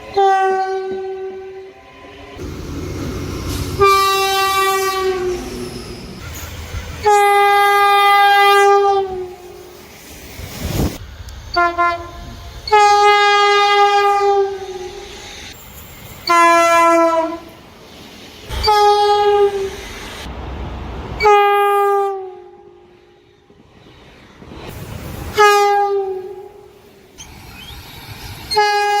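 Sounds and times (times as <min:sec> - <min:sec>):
train horn blasts: 0:00.0 - 0:01.9, 0:03.5 - 0:05.6, 0:07.0 - 0:09.6, 0:11.5 - 0:15.0, 0:16.2 - 0:17.6, 0:18.6 - 0:19.7, 0:21.2 - 0:22.9, 0:25.3 - 0:26.7, 0:28.5 - 0:29.0.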